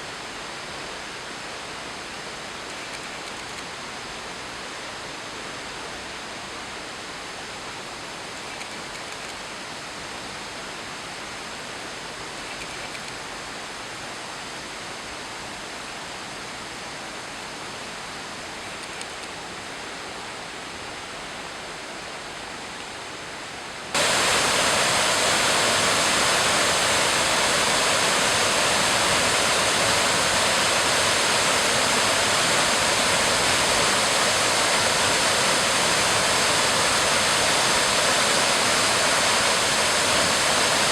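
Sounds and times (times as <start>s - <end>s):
waterfall rushing: 19.7s - 40.9s.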